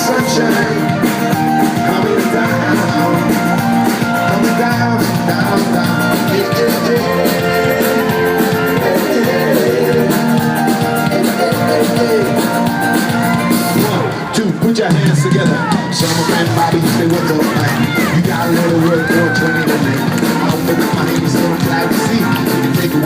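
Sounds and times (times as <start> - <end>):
live band with guitar: 0.0 - 23.0.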